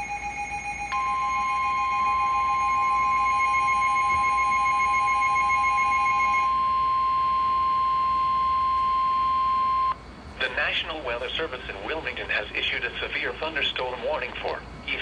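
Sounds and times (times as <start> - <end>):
pulsing beep: 0.0 - 10.0
steady alarm tone: 0.0 - 10.0.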